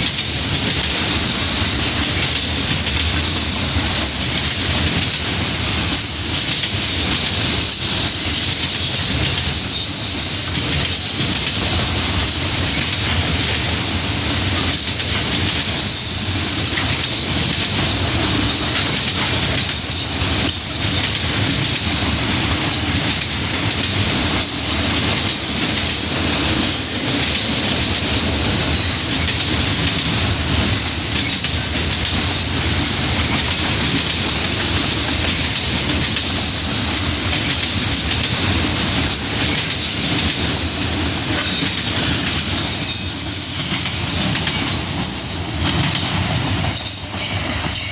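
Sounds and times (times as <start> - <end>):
freight train cars rolling: 0.0 - 47.9
wheels clicking over rail joints: 0.0 - 47.9
high wheel squeal: 39.2 - 47.9.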